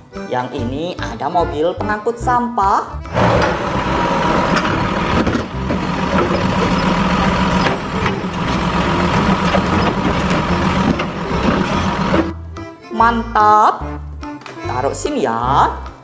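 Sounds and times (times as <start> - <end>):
garbage truck engine running: 3.1 - 12.4.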